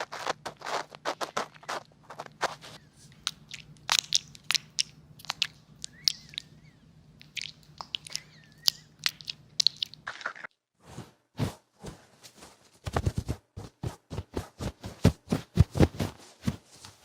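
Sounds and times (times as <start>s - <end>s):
crisp crunching and clicking: 0.0s - 6.5s, 7.2s - 10.5s
faint low hum: 0.0s - 17.0s.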